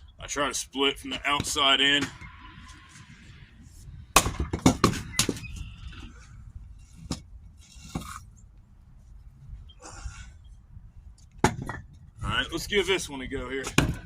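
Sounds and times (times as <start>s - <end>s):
wood knocks clattering: 11.4s - 12.0s.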